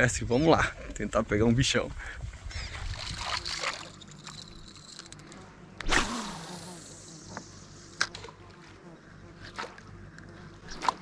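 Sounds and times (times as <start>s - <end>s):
paddle water splashing: 2.9s - 4.0s.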